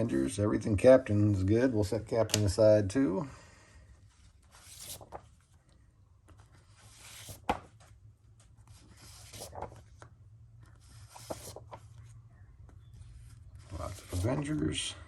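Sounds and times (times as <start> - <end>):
low steady hum: 0.0 - 15.0
paper rustling and sliding: 4.0 - 12.2, 12.9 - 14.8.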